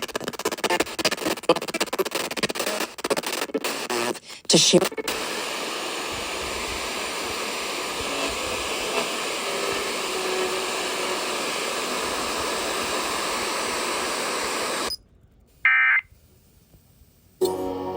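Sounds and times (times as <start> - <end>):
radio static hiss: 0.0 - 14.9.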